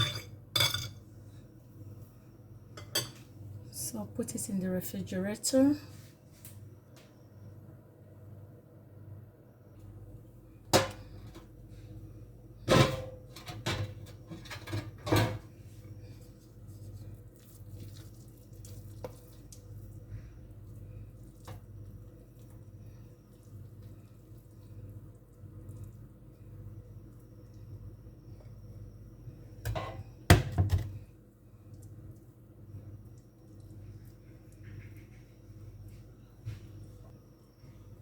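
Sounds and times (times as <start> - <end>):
dishes knocking and clattering: 0.0 - 1.0
steady low hum: 0.0 - 38.0.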